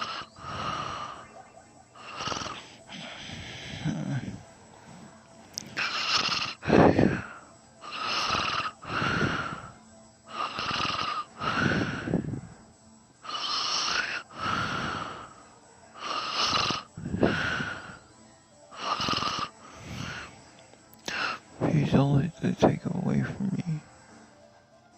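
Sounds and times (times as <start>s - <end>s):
person snoring: 0.0s - 1.3s, 2.0s - 12.6s, 13.2s - 18.0s, 18.7s - 20.4s.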